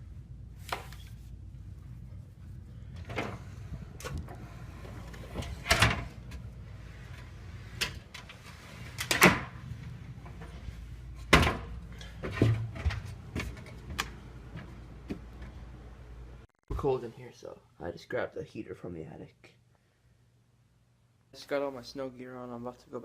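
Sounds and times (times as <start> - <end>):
low steady hum: 0.0 - 23.0
knocks and clunks: 11.2 - 14.1.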